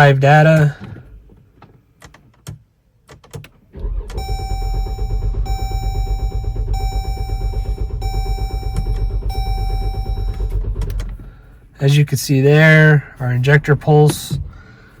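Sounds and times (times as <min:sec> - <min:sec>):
engine cranking on starter: 0:03.5 - 0:11.9.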